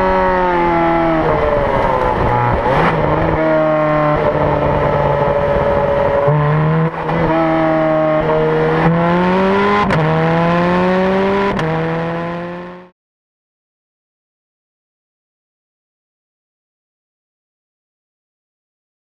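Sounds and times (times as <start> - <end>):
car engine revving: 0.0 - 12.9.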